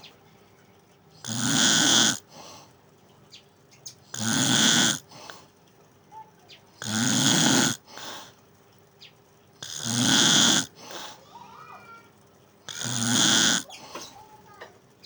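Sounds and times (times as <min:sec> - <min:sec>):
person snoring: 0:01.2 - 0:02.2, 0:04.2 - 0:05.1, 0:06.8 - 0:07.9, 0:09.6 - 0:11.1, 0:12.7 - 0:13.7.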